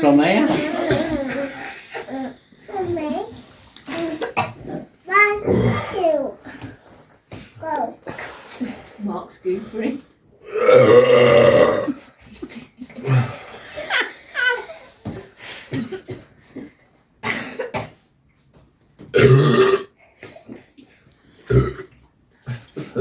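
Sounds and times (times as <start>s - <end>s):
person burping: 5.4s - 6.0s, 10.4s - 12.0s, 19.1s - 20.0s, 21.5s - 22.0s.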